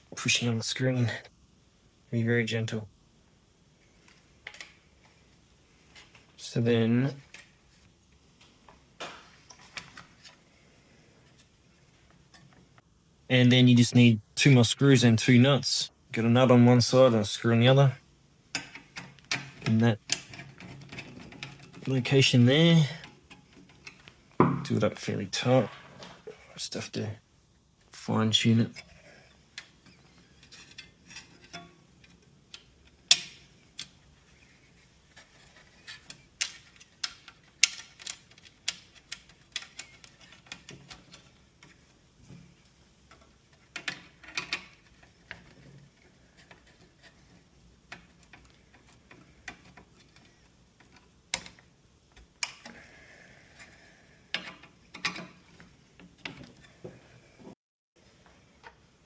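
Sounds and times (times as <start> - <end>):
hand tools clicking and knocking: 18.5 - 22.0.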